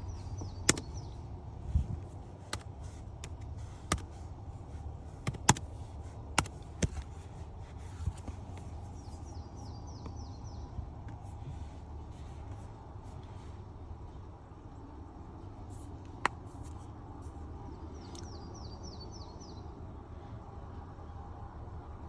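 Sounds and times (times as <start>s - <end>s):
sharp clicks and taps: 0.3s - 1.1s, 2.4s - 4.2s, 5.2s - 5.8s, 6.4s - 7.2s.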